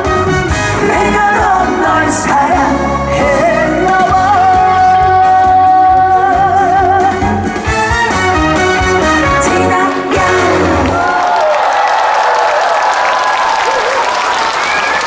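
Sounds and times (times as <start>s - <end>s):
backing band playing: 0.0s - 11.1s.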